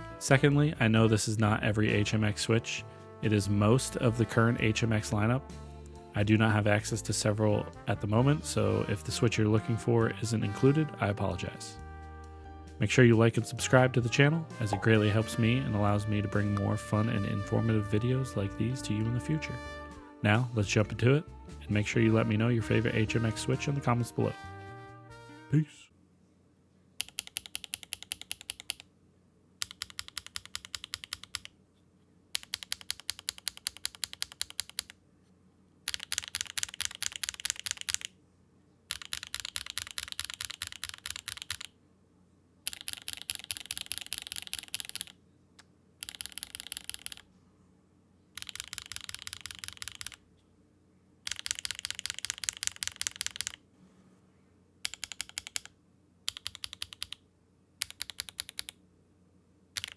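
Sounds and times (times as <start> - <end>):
mechanical keyboard typing: 27.0 - 28.9, 29.6 - 31.5, 32.4 - 35.0, 35.9 - 38.1, 38.9 - 41.7, 42.7 - 45.2, 46.0 - 47.3, 48.4 - 50.2, 51.2 - 53.6, 54.8 - 57.2, 57.8 - 58.8.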